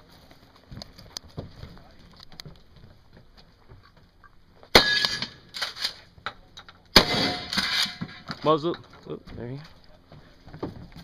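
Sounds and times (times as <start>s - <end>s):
metallic clangs of steel targets: 4.7s - 8.9s
loud gunshots: 7.0s - 7.6s.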